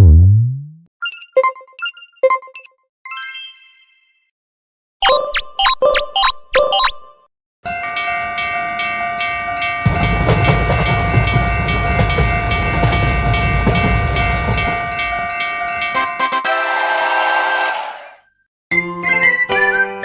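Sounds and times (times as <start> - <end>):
railroad crossing alarm ringing: 7.7 - 17.9
train rumbling past: 9.6 - 16.1.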